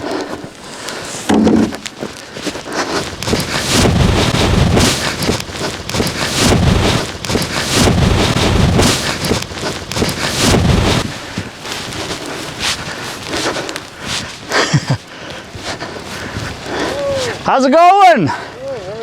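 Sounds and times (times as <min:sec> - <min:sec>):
wind buffeting microphone: 0:01.7 - 0:14.6.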